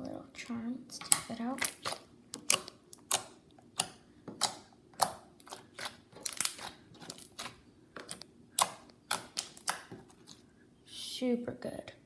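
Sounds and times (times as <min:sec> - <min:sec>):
slime clicking and popping: 0:01.0 - 0:10.0.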